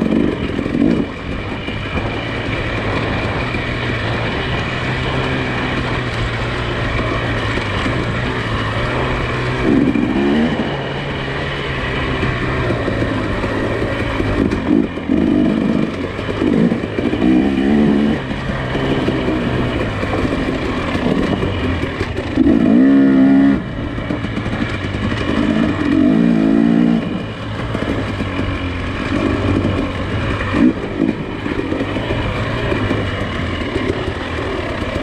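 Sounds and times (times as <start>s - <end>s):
engine revving under load: 0.0s - 35.0s.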